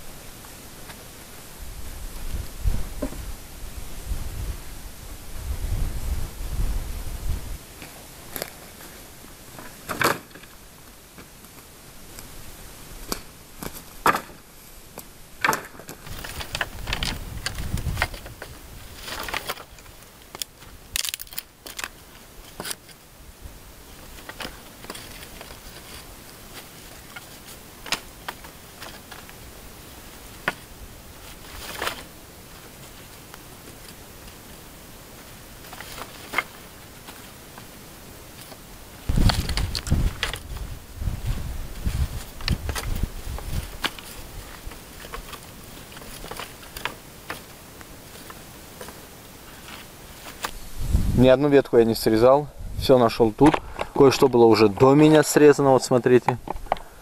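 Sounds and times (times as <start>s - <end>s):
low thuds of wood: 2.3s - 3.3s, 39.1s - 45.4s
dry branches snapping: 15.0s - 23.0s, 24.0s - 29.4s, 31.3s - 32.2s, 35.6s - 37.6s, 38.4s - 40.7s, 41.8s - 50.6s
leaf litter crunching underfoot: 15.9s - 23.0s, 23.9s - 51.1s.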